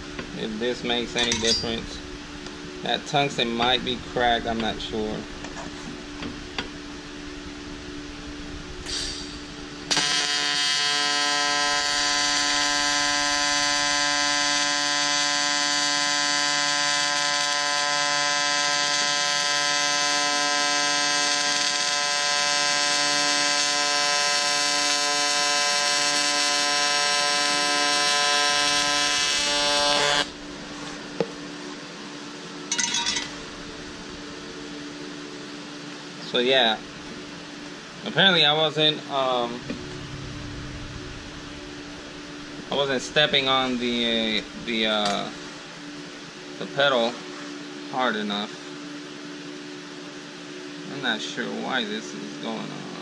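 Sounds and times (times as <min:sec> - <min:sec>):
welding arc buzzing: 0:00.0 - 0:31.7, 0:32.9 - 0:35.8, 0:39.4 - 0:46.0.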